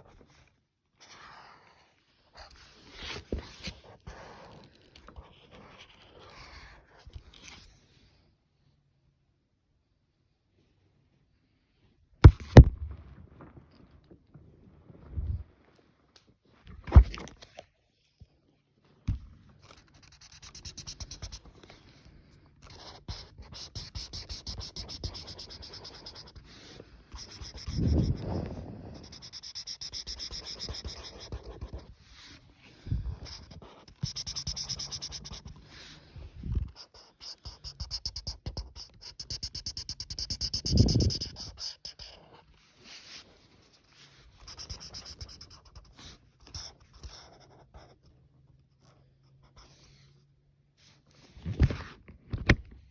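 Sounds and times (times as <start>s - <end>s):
drawing tool scratching on paper: 19.7s - 21.8s, 22.6s - 32.5s, 33.1s - 36.0s, 36.7s - 43.2s, 44.3s - 48.0s
breath puffs on microphone: 27.7s - 29.3s.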